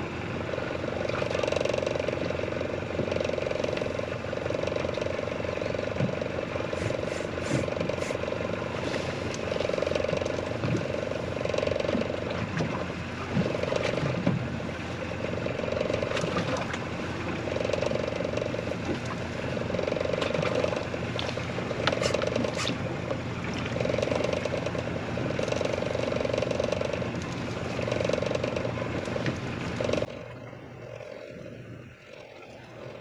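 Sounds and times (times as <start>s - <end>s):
fishing reel gears whirring: 23.8s - 27.0s, 27.7s - 29.1s.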